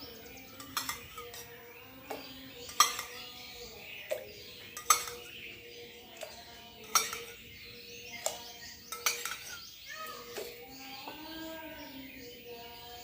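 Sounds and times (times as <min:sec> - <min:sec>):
birds chirping: 0:00.0 - 0:13.0
metal spoon clinking against glass: 0:00.1 - 0:05.6, 0:06.2 - 0:07.5, 0:08.2 - 0:09.7.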